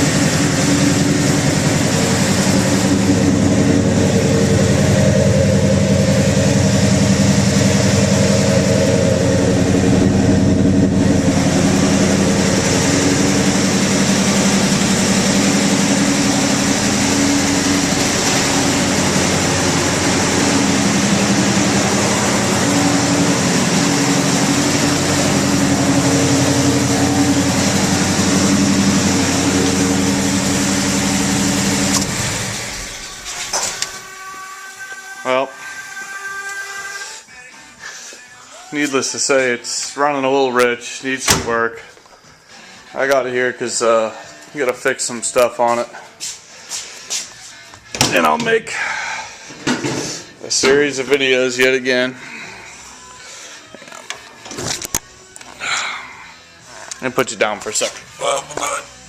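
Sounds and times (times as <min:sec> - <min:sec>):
car engine idling: 0:00.0 - 0:34.3.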